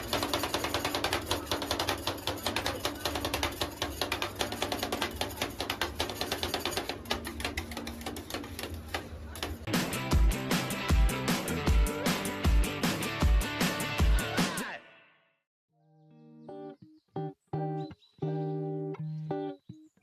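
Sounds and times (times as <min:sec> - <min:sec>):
fast irregular clicking: 0:00.0 - 0:09.7.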